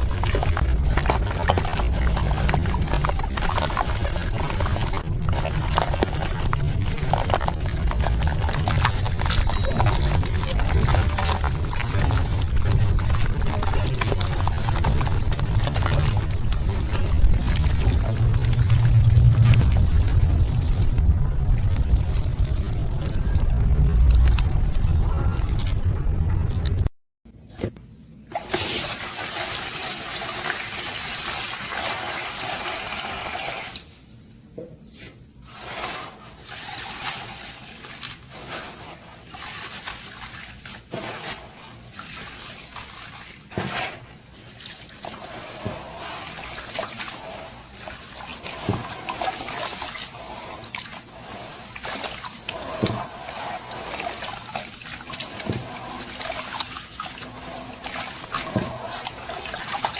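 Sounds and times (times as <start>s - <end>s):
cement crumbling into water: 0.0s - 25.9s.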